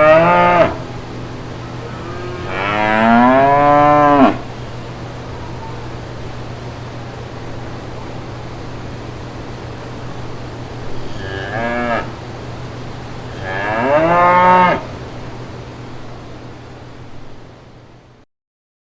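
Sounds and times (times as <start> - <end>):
cattle mooing: 0.0 - 0.9, 1.6 - 4.5, 11.0 - 12.2, 13.3 - 14.9
steady low hum: 0.0 - 18.2.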